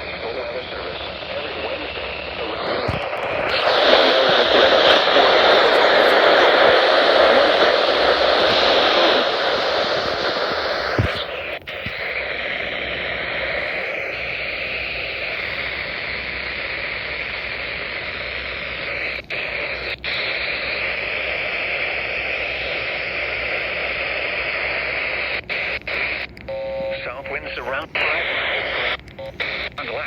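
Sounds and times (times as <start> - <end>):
radio static hiss: 0.0 - 30.0.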